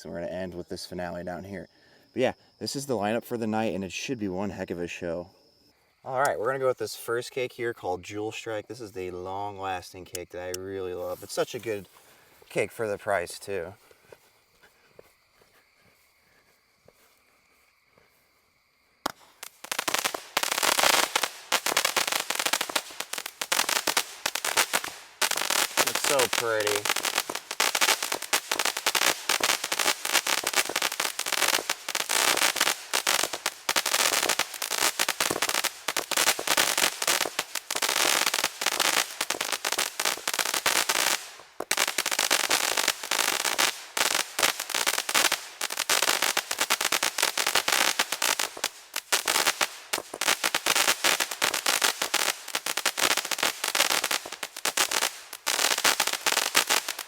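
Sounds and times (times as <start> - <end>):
fireworks cake firing and crackling: 10.9 - 14.3, 19.0 - 57.0.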